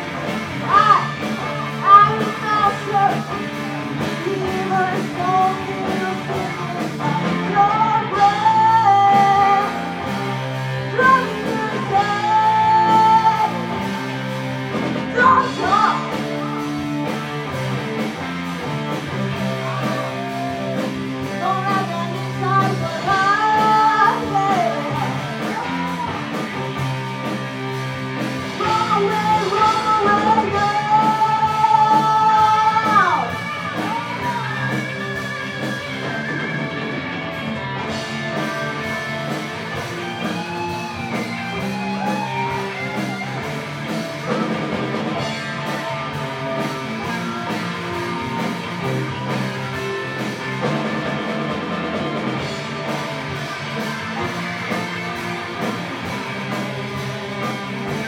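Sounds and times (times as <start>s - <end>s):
bass guitar: 0.0s - 58.0s
drums: 0.0s - 58.0s
electric guitar: 0.0s - 58.0s
person singing: 0.2s - 14.2s, 14.9s - 17.3s, 19.1s - 27.5s, 28.2s - 36.7s.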